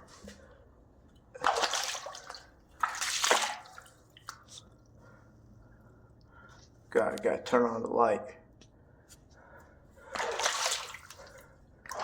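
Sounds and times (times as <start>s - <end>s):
shallow water splashing: 1.4s - 4.7s, 10.0s - 12.0s.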